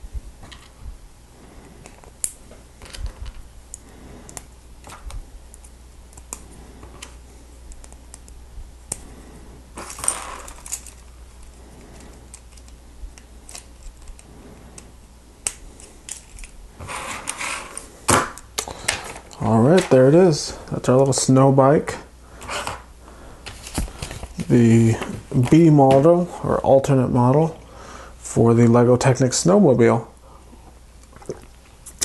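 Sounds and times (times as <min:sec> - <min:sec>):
rustling scrape: 0:15.8 - 0:17.9.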